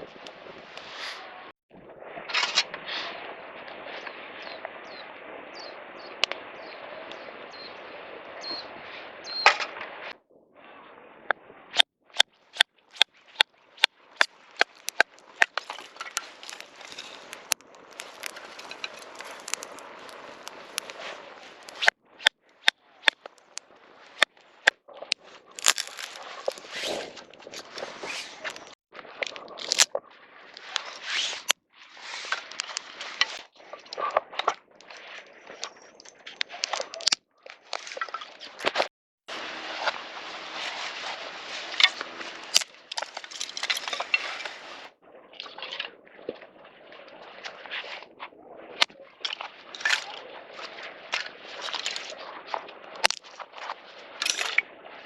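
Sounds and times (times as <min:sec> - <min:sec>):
campfire crackling and popping: 0:11.7 - 0:31.6, 0:32.4 - 0:34.1, 0:42.4 - 0:44.9, 0:53.0 - 0:53.4.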